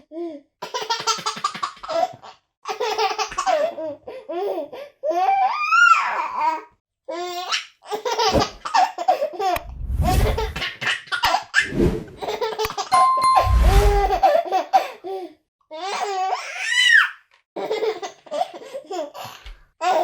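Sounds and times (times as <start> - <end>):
low rumbles: 9.6 - 10.6
steady beep: 13.0 - 14.2.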